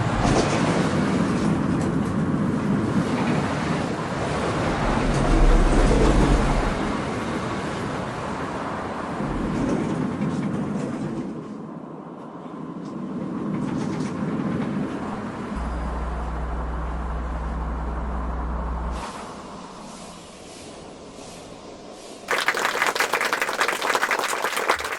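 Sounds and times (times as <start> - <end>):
train rumbling and rattling: 0.0 - 15.5
steady low hum: 15.6 - 19.0.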